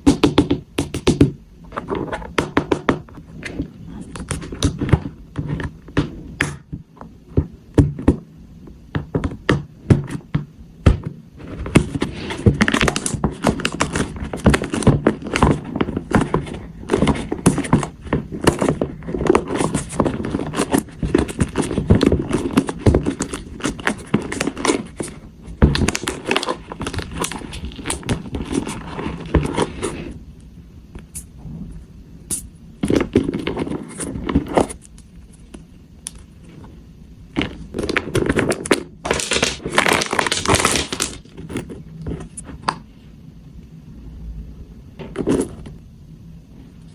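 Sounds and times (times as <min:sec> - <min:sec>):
packaging scraping and crinkling: 0:11.4 - 0:30.2, 0:37.4 - 0:42.6.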